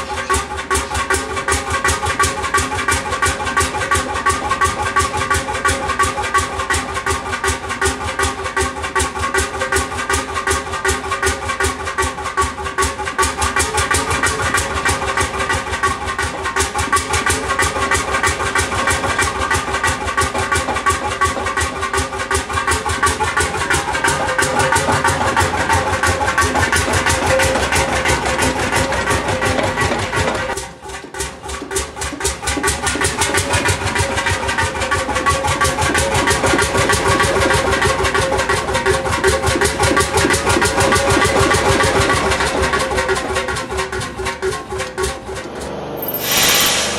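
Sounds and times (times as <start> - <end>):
large engine running: 0.0 - 46.9.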